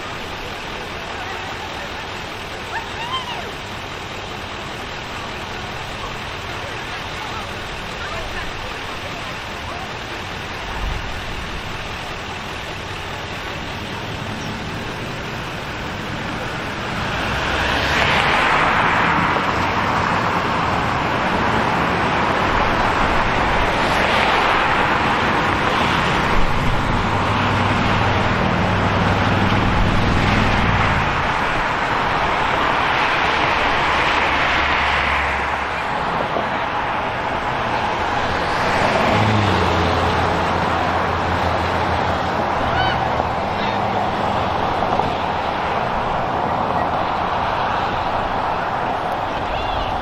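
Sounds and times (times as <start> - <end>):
cars passing: 0.0 - 50.0
low engine hum: 0.0 - 50.0
road noise: 0.0 - 50.0.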